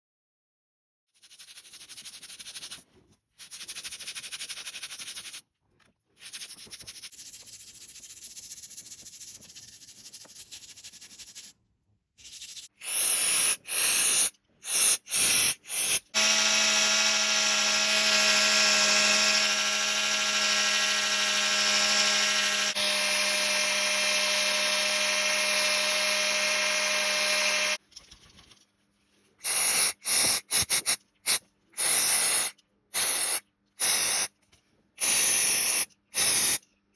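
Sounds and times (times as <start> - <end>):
electric drill motor whine: 16.2 - 27.8
short loud hissing bursts: 29.4 - 34.3.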